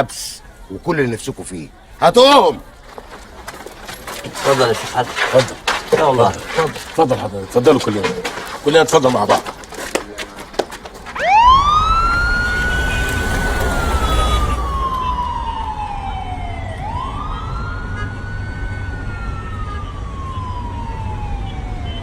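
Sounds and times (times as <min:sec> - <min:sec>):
police siren wailing: 0:11.1 - 0:22.0
low rumble: 0:11.4 - 0:17.7.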